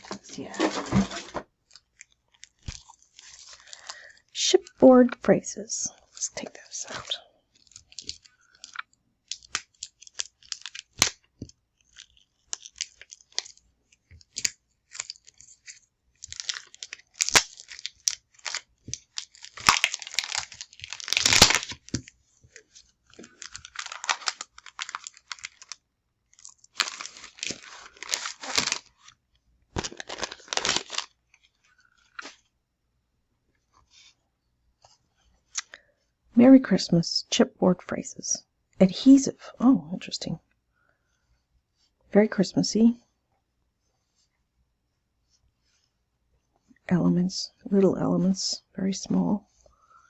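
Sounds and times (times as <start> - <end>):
packaging crinkling and tearing: 0.0 - 4.2, 5.9 - 32.5.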